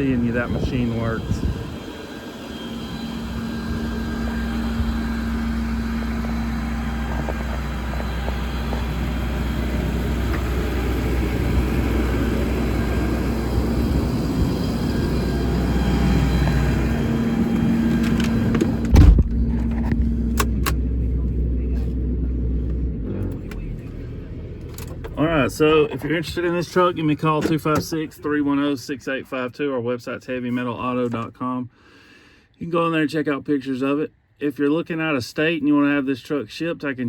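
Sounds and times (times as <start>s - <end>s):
engine idling: 0.0s - 26.6s
loud thump: 18.6s - 20.6s.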